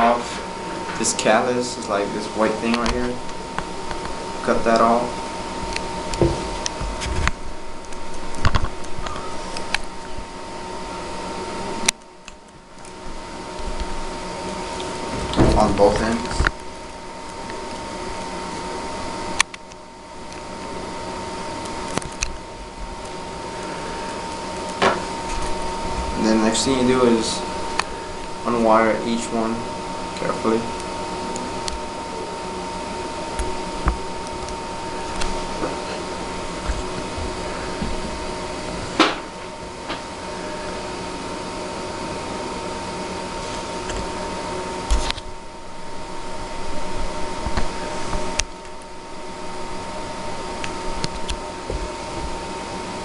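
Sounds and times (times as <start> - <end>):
faint constant whine: 0.0 - 53.0
steady hiss: 23.0 - 42.2.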